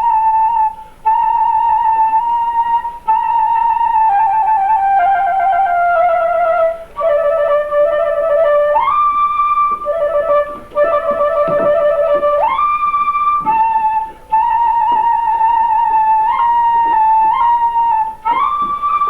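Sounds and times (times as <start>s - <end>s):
solo woodwind melody: 0.0s - 19.0s
soft low thuds: 8.8s - 19.0s.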